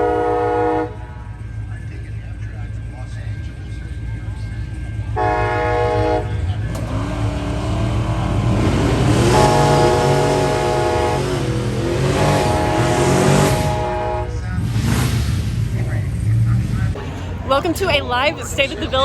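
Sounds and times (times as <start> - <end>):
racing car engines revving: 0.0 - 19.0.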